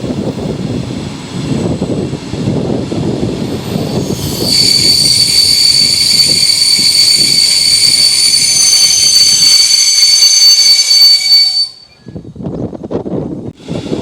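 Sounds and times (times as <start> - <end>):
train rolling rumble: 0.0 - 14.0
high brake squeal: 3.7 - 12.2.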